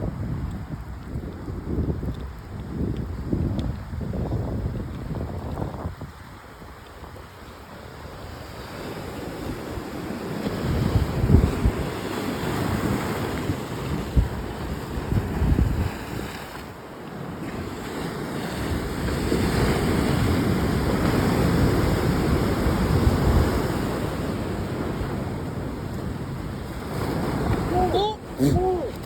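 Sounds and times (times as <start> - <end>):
ocean surf washing ashore: 0.0 - 29.0
wind gusting on microphone: 0.0 - 29.0.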